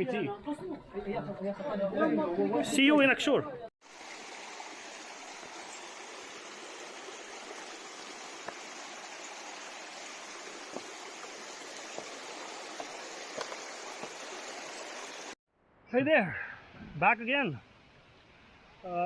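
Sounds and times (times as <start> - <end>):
stream water rushing: 3.8 - 15.4.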